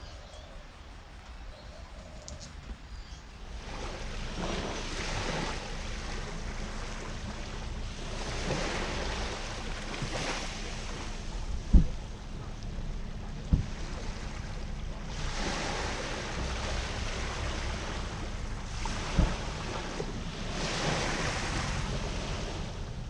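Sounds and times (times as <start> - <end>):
waves: 0.0 - 23.0
wind: 0.0 - 23.0
wind buffeting microphone: 2.5 - 23.0
low thumps: 11.4 - 12.6.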